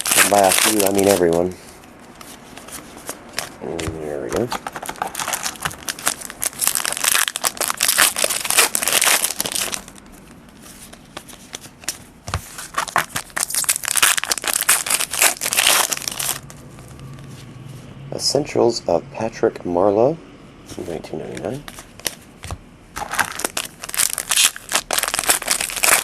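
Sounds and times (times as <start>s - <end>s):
foil wrapper crinkling: 0.0s - 1.6s, 4.4s - 10.0s, 10.8s - 16.6s, 23.0s - 26.0s.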